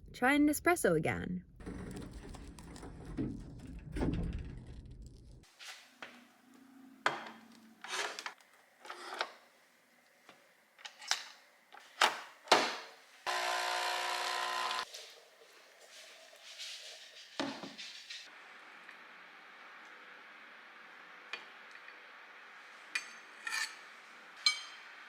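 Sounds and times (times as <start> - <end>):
espresso machine pump buzz: 13.3 - 14.9.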